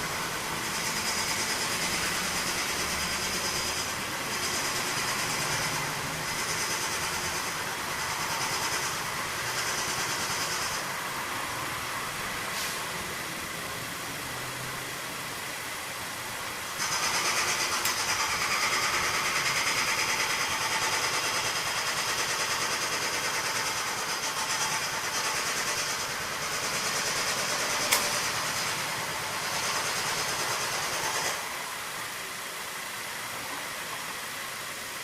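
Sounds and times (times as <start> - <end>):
sharp click: 17.6 - 18.1, 27.8 - 28.3.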